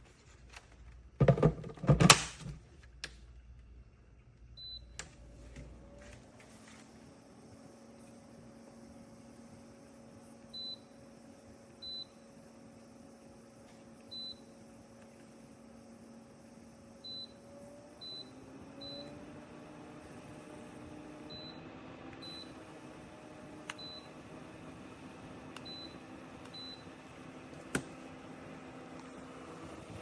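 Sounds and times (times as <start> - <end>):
fan humming: 0.0 - 30.0.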